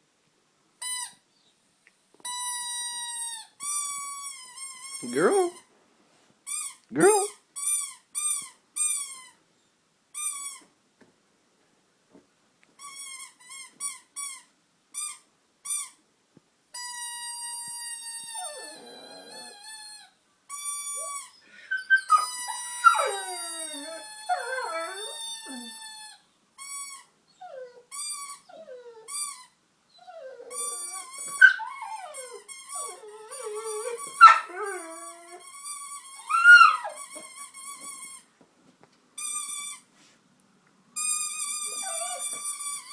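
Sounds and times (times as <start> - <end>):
toy squeaker squeaking: 2.3 - 5.6, 16.8 - 38.3, 41.0 - 42.9
dog howling: 18.4 - 19.6, 21.8 - 25.8, 30.0 - 35.4, 36.2 - 37.0, 41.7 - 42.4.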